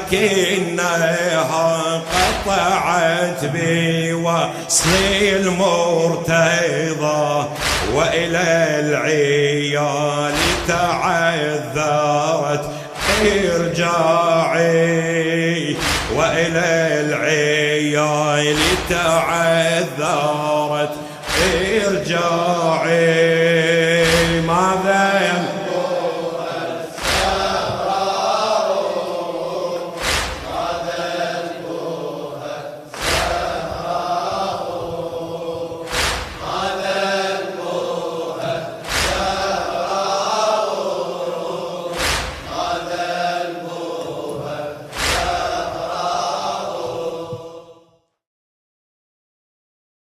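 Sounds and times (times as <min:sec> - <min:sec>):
voices chanting a slow lament: 0:00.0 - 0:48.1
heavy thumps: 0:23.9 - 0:24.9, 0:29.8 - 0:31.0, 0:32.9 - 0:37.0.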